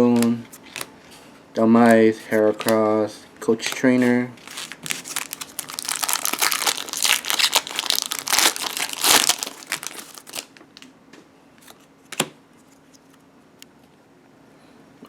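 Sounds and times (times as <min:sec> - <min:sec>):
foil wrapper tearing and crinkling: 0:04.4 - 0:10.8.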